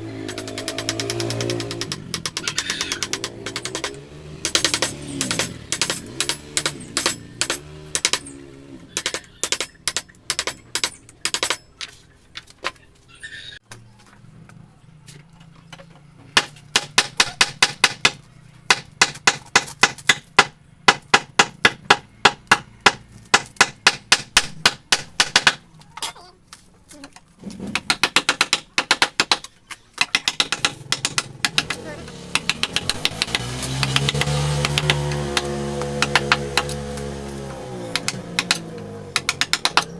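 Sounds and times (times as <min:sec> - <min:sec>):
mallet tapping chisel into wood: 0:30.0 - 0:36.8, 0:39.2 - 0:39.9.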